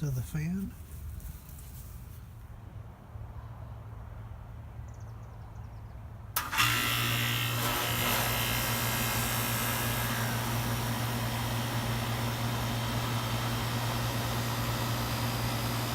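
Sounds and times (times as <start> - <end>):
air conditioner compressor and fan: 0.0 - 2.9, 6.4 - 15.9.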